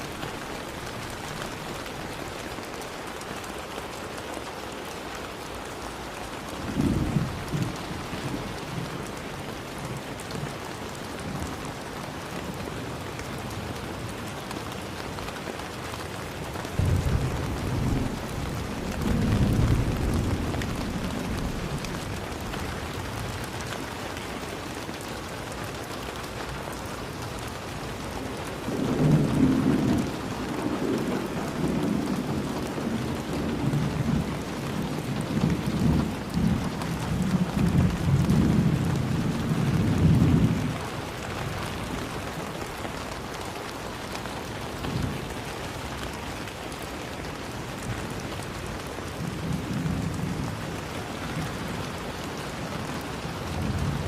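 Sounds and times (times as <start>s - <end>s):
steady rain: 0.0s - 54.0s
rolling thunder: 16.8s - 22.0s.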